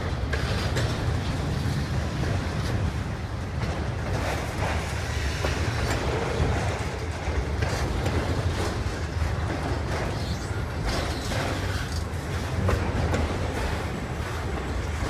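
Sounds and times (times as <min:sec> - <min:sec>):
freight train rumbling: 0:00.0 - 0:15.0
wheels clicking over rail joints: 0:00.0 - 0:15.0.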